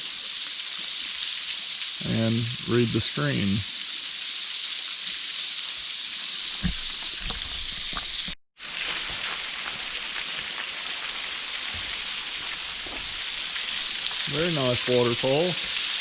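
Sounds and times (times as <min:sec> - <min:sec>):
small waterfall splashing: 0:00.0 - 0:16.0
soft knock: 0:06.6 - 0:08.4.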